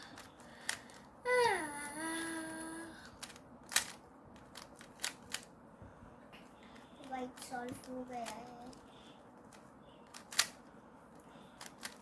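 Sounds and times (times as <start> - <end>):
puzzle cube clicking: 3.2 - 5.5, 10.1 - 10.6, 11.6 - 12.0.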